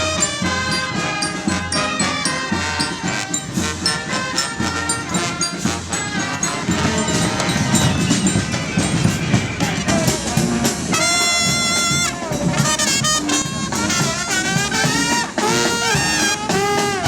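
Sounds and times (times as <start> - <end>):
brass marching band playing: 0.0 - 17.0.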